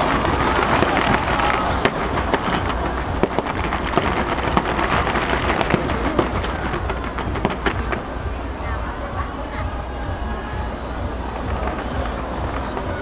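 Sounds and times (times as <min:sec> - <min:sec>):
sharp firework pops: 0:00.0 - 0:08.1
fireworks crackling: 0:00.0 - 0:13.0.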